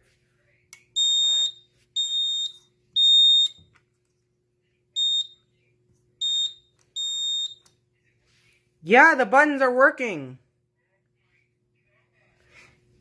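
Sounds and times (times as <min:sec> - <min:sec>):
piezo buzzer beeping shrilly: 0:06.2 - 0:07.6.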